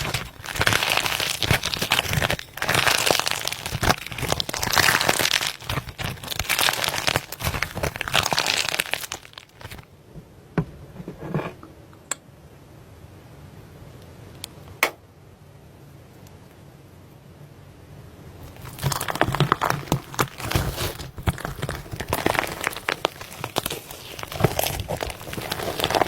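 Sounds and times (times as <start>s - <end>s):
slime crackling: 0.0s - 9.8s, 18.4s - 26.0s
slime popping: 0.0s - 9.8s, 18.4s - 26.0s.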